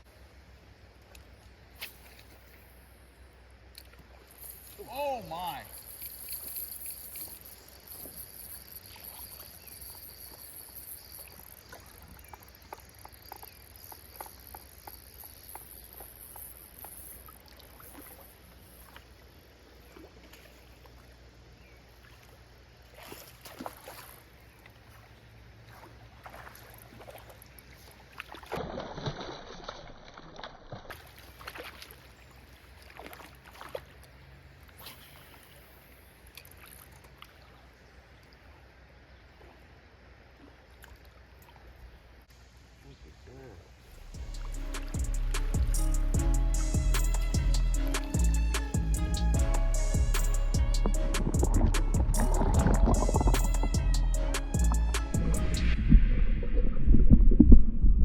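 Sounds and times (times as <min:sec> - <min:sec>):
high insect buzz: 0:04.3 - 0:18.2
water splashes and knocks: 0:22.0 - 0:34.8, 0:50.6 - 0:53.7.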